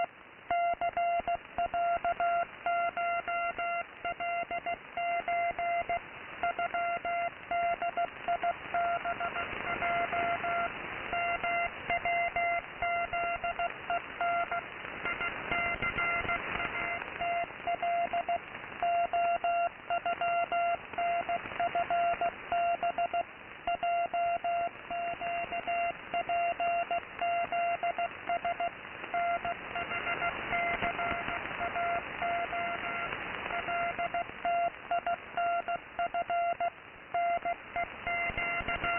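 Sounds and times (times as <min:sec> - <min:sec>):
shortwave static hiss: 0:00.0 - 0:38.9
morse code tone: 0:00.5 - 0:38.9.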